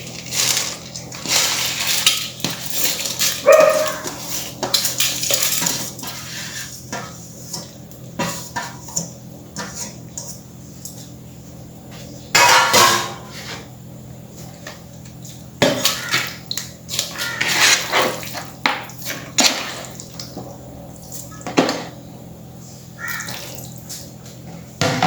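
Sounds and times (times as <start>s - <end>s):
bowls and spoon clattering on pan: 12.4s - 13.3s.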